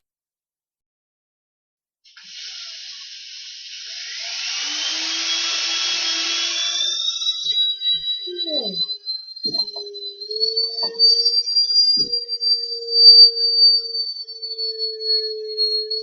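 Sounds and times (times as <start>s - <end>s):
hissing rush: 2.2s - 7.1s
whine rising in pitch: 2.4s - 16.0s.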